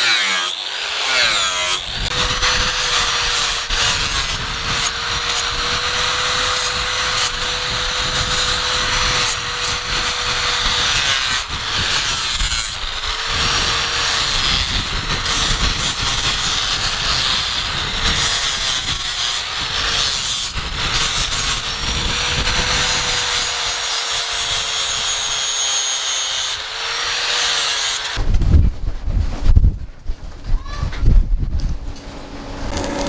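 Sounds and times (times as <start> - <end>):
electric power tool grinding: 0.0 - 28.2, 32.3 - 33.0.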